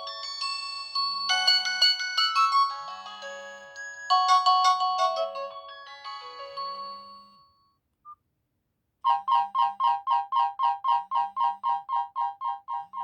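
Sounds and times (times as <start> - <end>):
phone ringtone jingle: 0.0 - 7.6
repeating note ringtone: 9.1 - 13.0.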